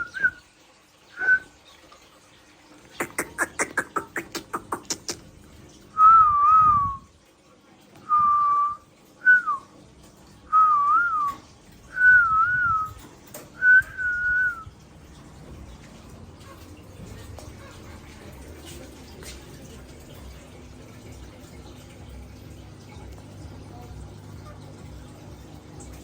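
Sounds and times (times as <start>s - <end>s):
short wavering whistles: 0.0s - 0.4s, 1.1s - 1.6s, 6.0s - 7.0s, 8.1s - 9.7s, 10.5s - 13.0s, 13.6s - 14.7s.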